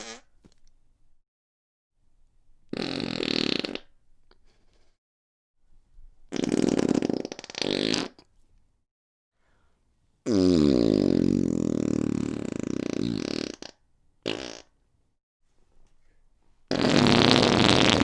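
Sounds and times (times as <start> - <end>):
fart sound effects: 0.0 - 0.4, 2.7 - 3.9, 6.3 - 8.3, 10.3 - 14.8, 16.7 - 18.0.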